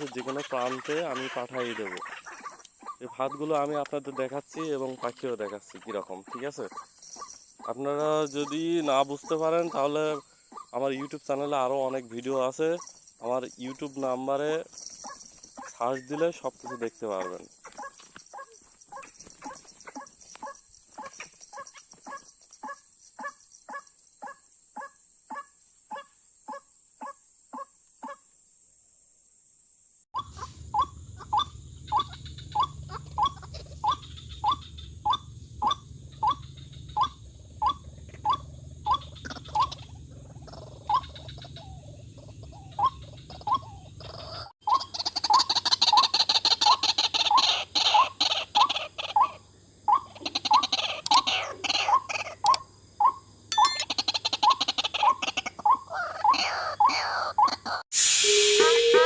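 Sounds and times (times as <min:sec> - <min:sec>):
waterhen calling: 0:00.0 - 0:04.8, 0:30.2 - 0:52.6.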